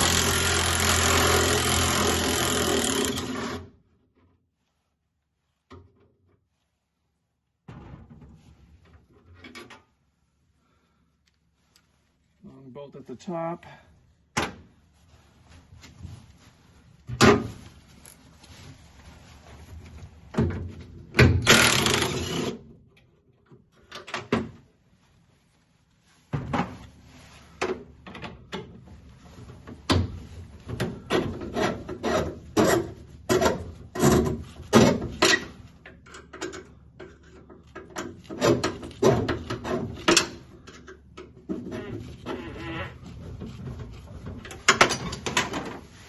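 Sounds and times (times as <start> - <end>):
scraping rasp: 30.9 - 35.5, 38.3 - 40.4.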